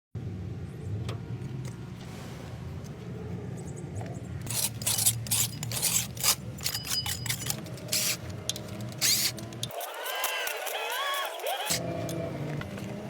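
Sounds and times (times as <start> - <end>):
tools scraping and clanking: 4.0 - 13.0.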